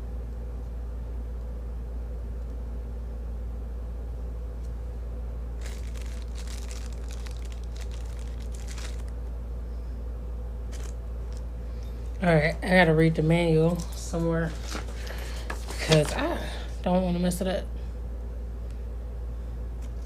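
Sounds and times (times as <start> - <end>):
steady low hum: 0.0 - 20.0
packaging crinkling and rustling: 5.6 - 9.2, 10.7 - 11.5, 13.7 - 16.2.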